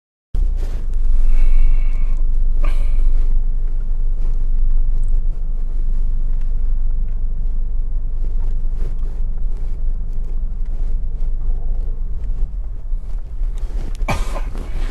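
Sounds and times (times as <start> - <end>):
car engine and road noise: 0.4 - 14.9.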